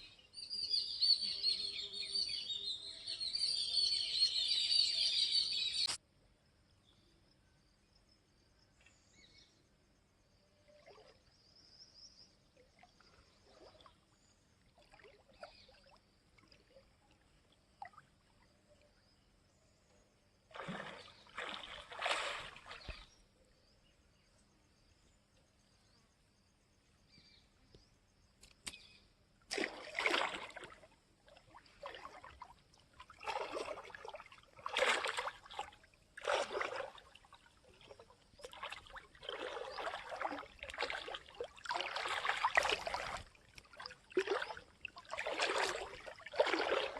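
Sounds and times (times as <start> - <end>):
faint high insect-like tone: 0.0 - 46.9
water splashing and sloshing: 10.6 - 11.7, 12.4 - 19.0, 20.4 - 23.2, 29.4 - 46.9.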